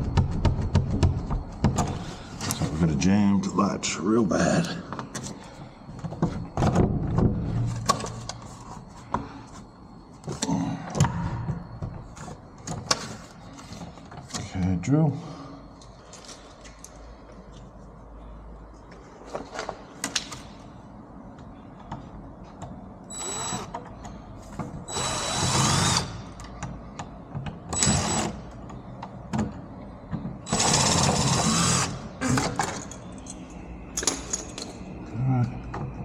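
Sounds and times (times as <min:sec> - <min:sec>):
cordless drill running: 0:23.1 - 0:23.6, 0:24.9 - 0:26.1, 0:30.5 - 0:32.0.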